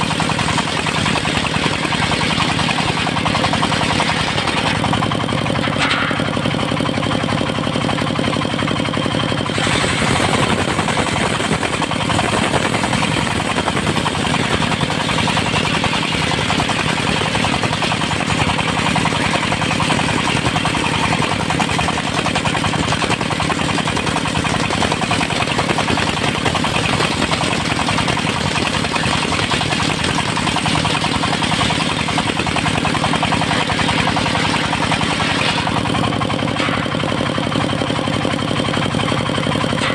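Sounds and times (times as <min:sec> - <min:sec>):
saw blade cutting log: 0:00.0 - 0:39.9
sawmill engine running: 0:00.0 - 0:39.9
board dropping: 0:05.6 - 0:06.6, 0:33.5 - 0:35.8.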